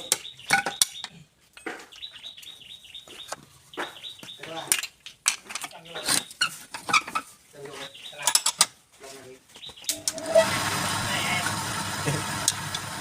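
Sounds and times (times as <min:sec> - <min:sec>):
small birds chirping: 0:00.0 - 0:10.3.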